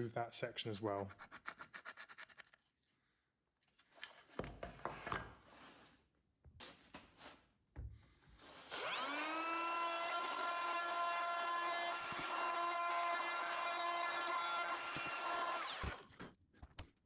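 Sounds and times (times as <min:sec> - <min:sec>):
power tool motor whine: 0:08.5 - 0:16.1.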